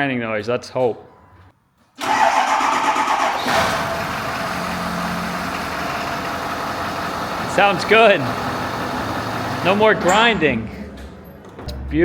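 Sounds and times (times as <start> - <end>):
diesel engine idling: 3.0 - 11.5.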